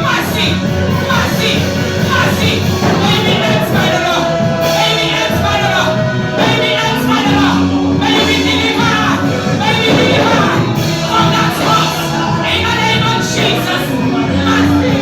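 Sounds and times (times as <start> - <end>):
gospel singing with instruments: 0.0 - 15.0.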